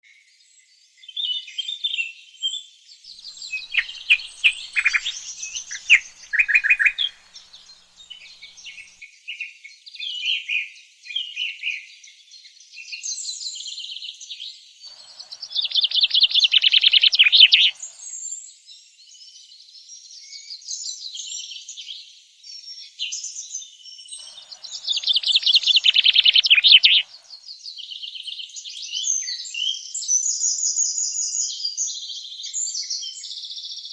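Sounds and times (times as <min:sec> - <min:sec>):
songbirds singing and chirping: 0:00.1 - 0:21.7, 0:22.5 - 0:33.9
loud rapid bird trills: 0:03.2 - 0:08.9, 0:14.9 - 0:18.2, 0:24.2 - 0:27.4.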